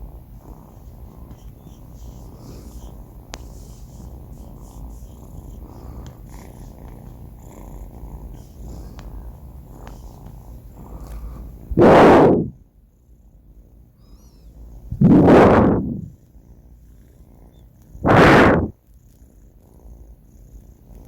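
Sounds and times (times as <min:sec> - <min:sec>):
kitten snoring: 0:00.4 - 0:21.0
sudden loud burst of noise: 0:11.7 - 0:12.6, 0:14.9 - 0:16.1, 0:18.0 - 0:18.7.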